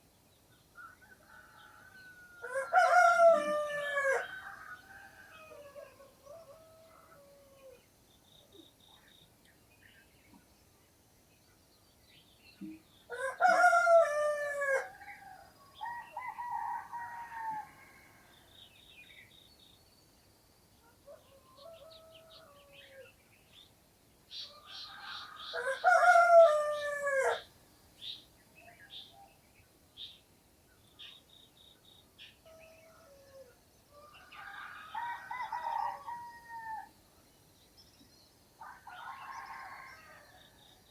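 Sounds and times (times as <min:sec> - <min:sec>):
rooster crowing: 0:00.9 - 0:07.8, 0:13.1 - 0:18.4, 0:24.5 - 0:27.5, 0:32.5 - 0:36.9, 0:38.6 - 0:40.5
small birds chirping: 0:28.0 - 0:36.2.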